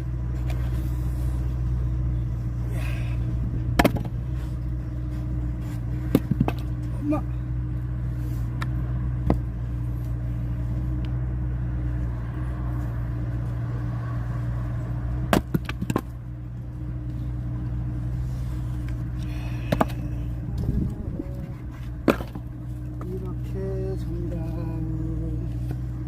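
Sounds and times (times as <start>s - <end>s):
engine droning: 0.0s - 26.0s
firewood splitting cracks: 3.7s - 4.2s, 6.0s - 6.9s, 15.3s - 16.2s, 22.0s - 23.1s.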